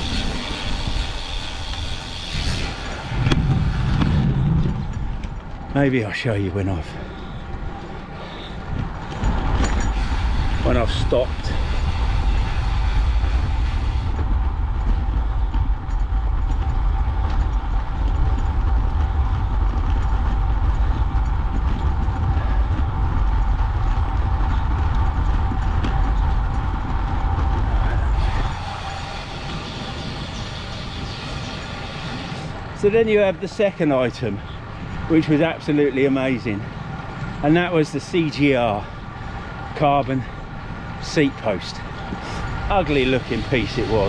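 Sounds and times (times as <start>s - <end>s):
wind on microphone: 0.0s - 5.8s, 7.0s - 33.5s
bicycle road noise: 0.0s - 44.0s.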